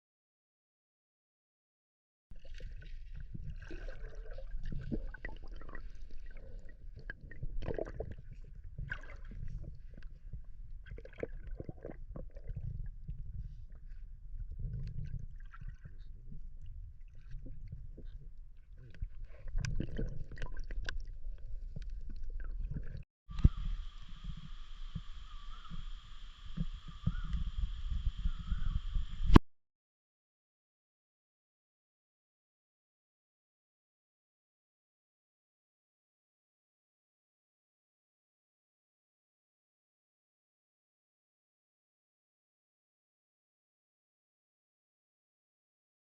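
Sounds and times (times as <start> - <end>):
water sloshing and splashing: 2.4 - 25.1.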